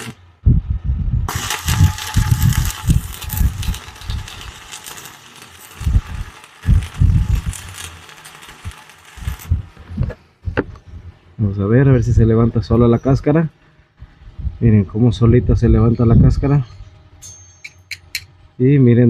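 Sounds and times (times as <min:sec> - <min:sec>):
welding arc crackling: 0:00.0 - 0:00.4, 0:01.3 - 0:10.2
low thumps: 0:09.4 - 0:11.3.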